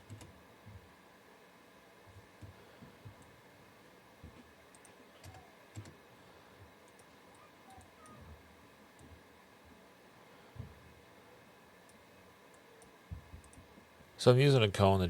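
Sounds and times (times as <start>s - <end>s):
computer mouse clicks: 0.0s - 0.4s, 4.3s - 6.0s, 6.8s - 8.2s, 11.8s - 13.7s
keyboard clicks: 0.0s - 0.4s, 4.7s - 6.0s, 6.8s - 8.2s, 11.8s - 13.7s.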